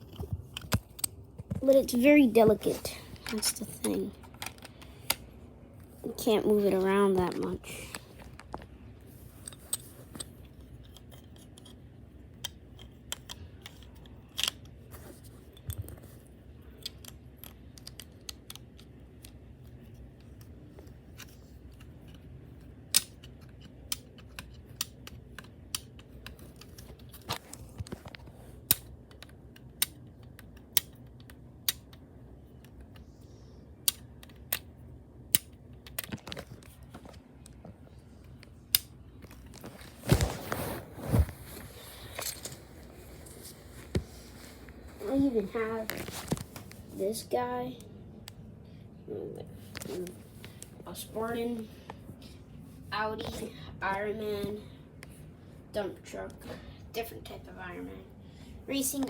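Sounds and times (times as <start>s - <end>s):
plastic toy bricks clicking: 12.4s - 14.8s, 16.8s - 19.4s.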